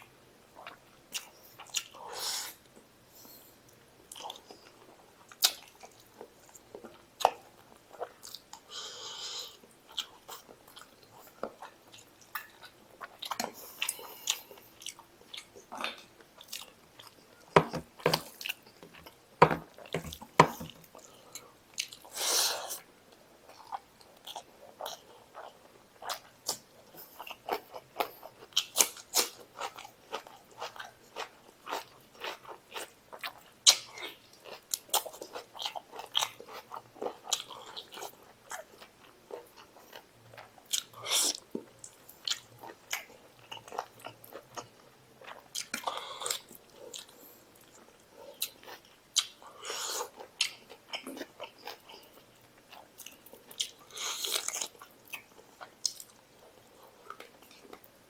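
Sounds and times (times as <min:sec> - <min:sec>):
close chewing and biting: 0:23.4 - 0:57.9.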